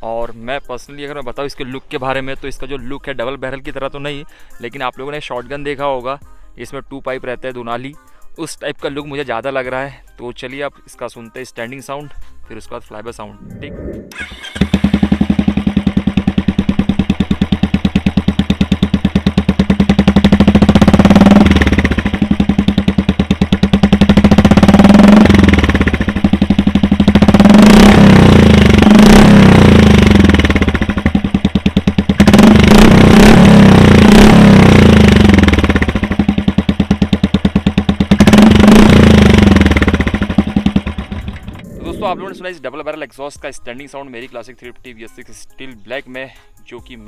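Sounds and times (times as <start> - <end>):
motorcycle engine idling and revving: 14.0 - 42.2.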